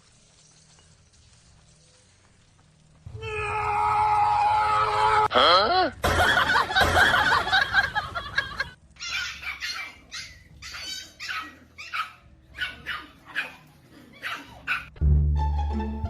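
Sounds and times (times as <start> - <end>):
dog barking high-pitched: 9.0 - 14.9
music: 14.9 - 16.0.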